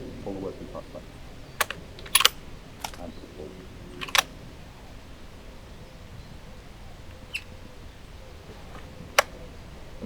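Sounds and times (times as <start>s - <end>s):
rifle action click: 1.6s - 3.0s, 4.0s - 4.3s.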